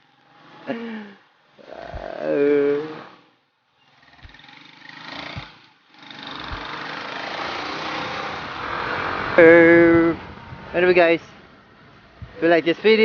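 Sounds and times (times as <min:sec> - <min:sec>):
scooter engine: 0:00.0 - 0:10.6
wind rushing: 0:06.4 - 0:06.8, 0:07.9 - 0:11.2, 0:11.8 - 0:12.5.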